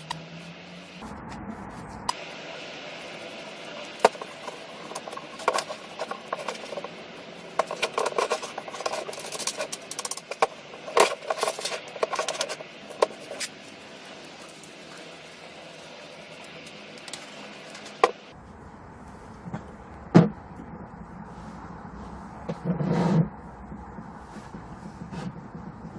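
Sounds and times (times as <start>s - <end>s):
small hard parts clattering: 4.0s - 15.3s.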